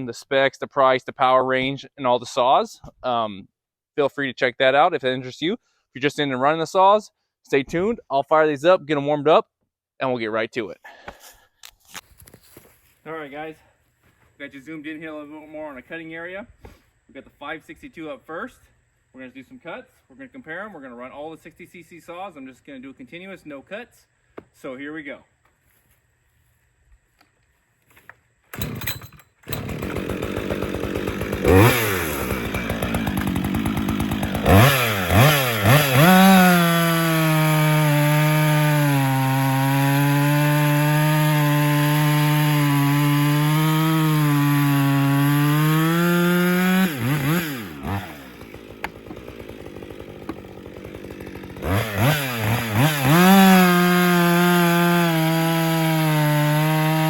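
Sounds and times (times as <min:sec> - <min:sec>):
chainsaw cutting through log: 0:28.5 - 0:57.0.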